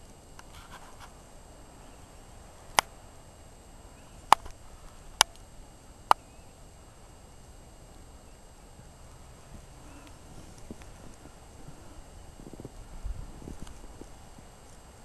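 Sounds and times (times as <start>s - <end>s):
faint steady background noise: 0.0s - 15.0s
sharp clicks: 4.3s - 4.6s, 5.2s - 5.5s.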